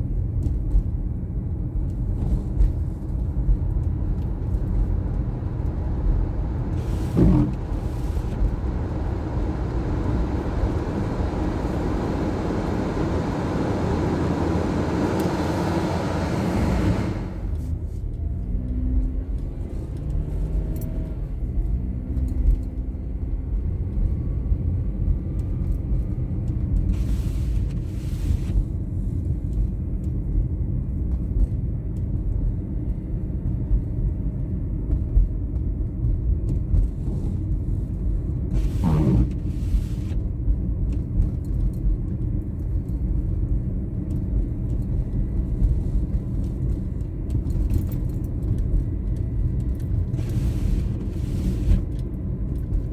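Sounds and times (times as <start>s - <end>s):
car engine and tyres rumbling: 0.0s - 52.9s
passing vehicle rush: 6.7s - 17.8s.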